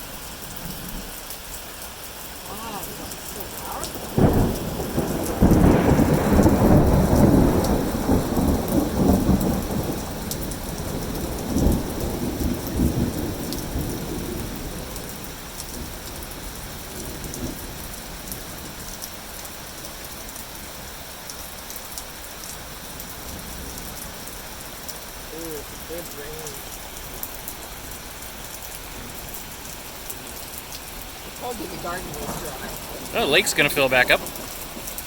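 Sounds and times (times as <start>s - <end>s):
steady rain: 0.0s - 35.0s
thunder rumbling: 2.4s - 16.0s, 26.5s - 35.0s.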